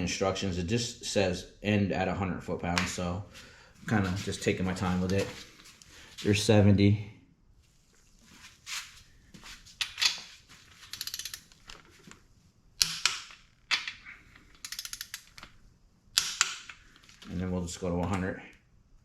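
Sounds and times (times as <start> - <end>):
torque wrench ratchet clicks: 10.9 - 11.5, 14.6 - 15.3.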